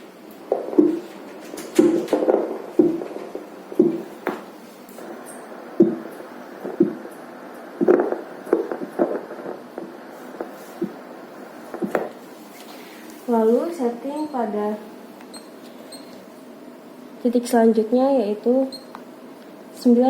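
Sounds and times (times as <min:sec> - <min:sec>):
doppler heartbeat pulses: 0:00.5 - 0:01.1, 0:01.7 - 0:12.2.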